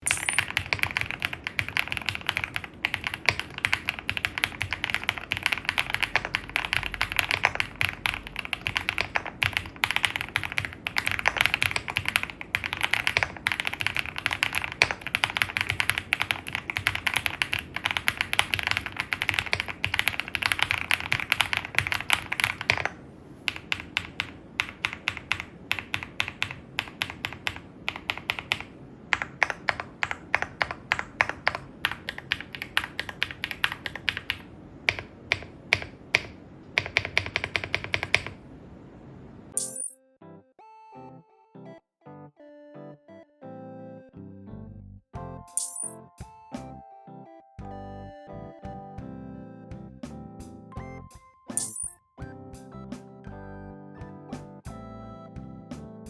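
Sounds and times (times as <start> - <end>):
mechanical keyboard typing: 0.0 - 38.4, 51.6 - 52.0.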